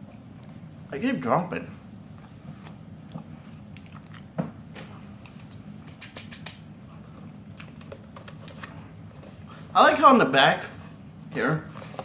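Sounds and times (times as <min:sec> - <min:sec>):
person chewing food: 0:00.0 - 0:00.9, 0:01.9 - 0:09.7.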